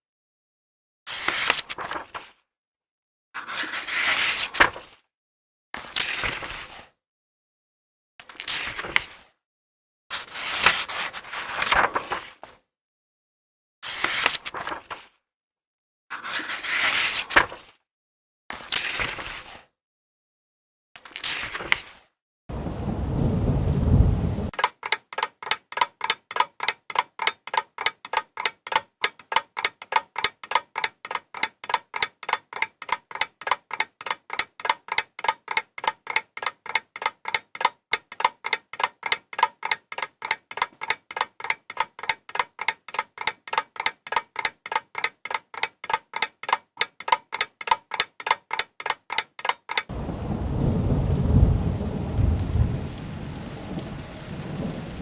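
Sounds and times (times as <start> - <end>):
regular ticking: 24.5 - 50.9.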